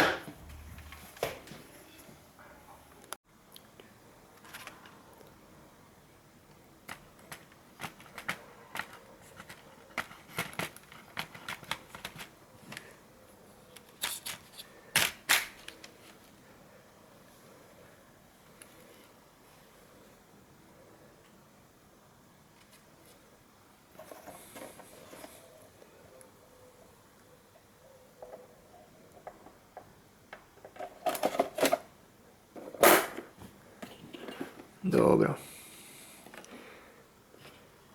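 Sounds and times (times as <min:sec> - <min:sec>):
small parts and tools clicking: 0:06.9 - 0:12.9.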